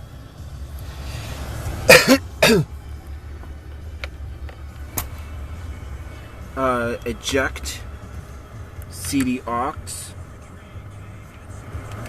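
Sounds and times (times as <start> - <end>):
steady low hum: 0.0 - 12.0
man coughing: 1.9 - 2.7.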